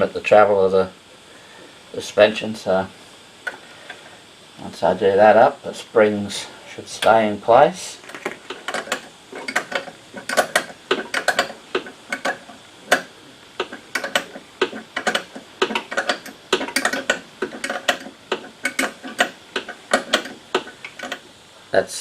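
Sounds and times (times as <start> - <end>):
ratchet wrench clicking: 8.6 - 21.2.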